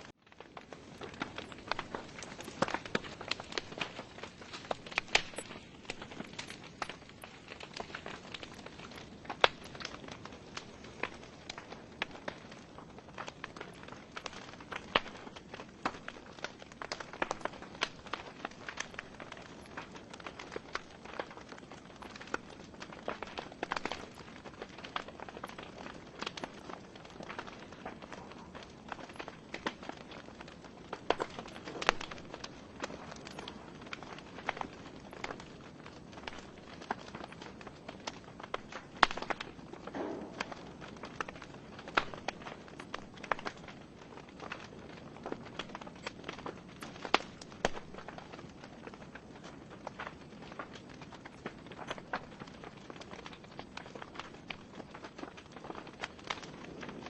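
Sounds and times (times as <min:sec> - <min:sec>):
fire flames rushing: 0:00.0 - 0:57.0
logs crackling and popping: 0:00.0 - 0:57.0
hiss of flames: 0:27.4 - 0:44.0.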